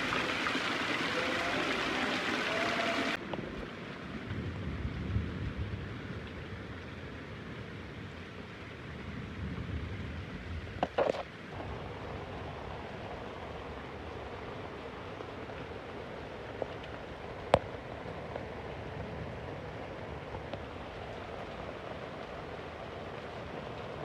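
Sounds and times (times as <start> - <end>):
rushing water: 0.0 - 4.0, 11.0 - 24.0
steady rain: 0.0 - 24.0.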